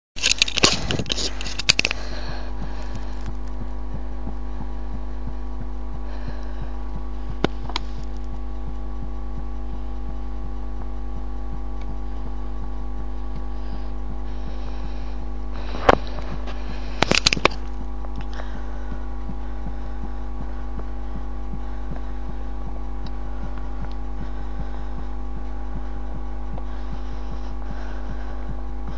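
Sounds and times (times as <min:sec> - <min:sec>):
electrical hum: 0:00.0 - 0:28.9
human heartbeat: 0:01.8 - 0:28.9
handling clicks: 0:17.0 - 0:18.3.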